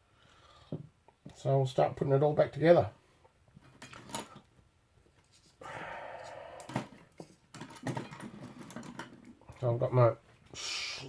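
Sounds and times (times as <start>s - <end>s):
steady hiss: 10.5s - 11.0s.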